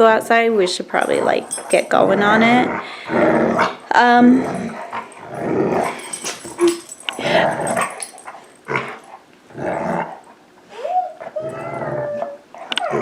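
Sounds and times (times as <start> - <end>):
dogs growling: 1.0 - 10.4, 11.1 - 13.0
dog whining and howling: 10.7 - 13.0.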